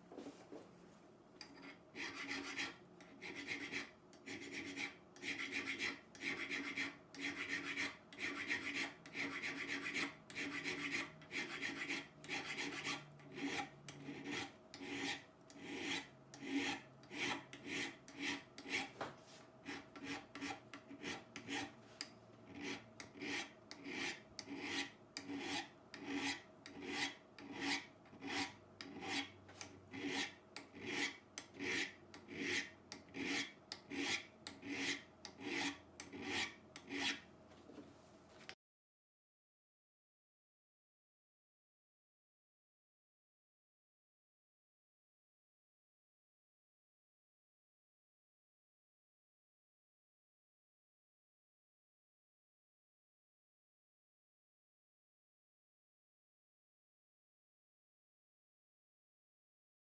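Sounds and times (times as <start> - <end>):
rasping strokes on steel: 1.4 - 19.0, 19.6 - 37.3.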